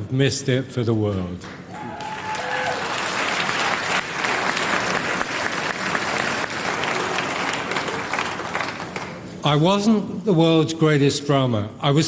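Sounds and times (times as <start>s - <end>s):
audience applauding: 1.7s - 9.3s.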